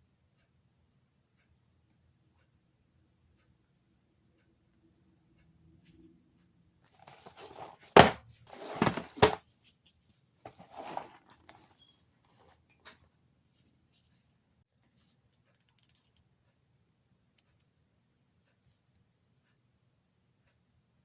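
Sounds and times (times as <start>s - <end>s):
cardboard box rustling and scraping: 7.0s - 9.4s, 10.5s - 11.6s
loud sharp knocks on cardboard: 8.0s - 8.2s.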